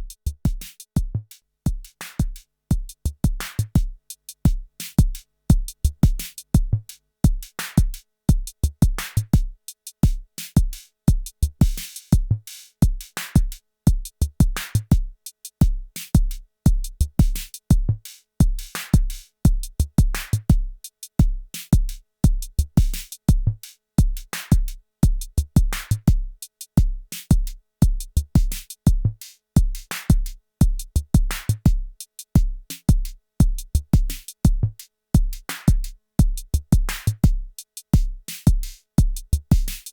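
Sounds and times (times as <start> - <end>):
drum machine beat: 0.0 - 6.7, 7.3 - 39.9.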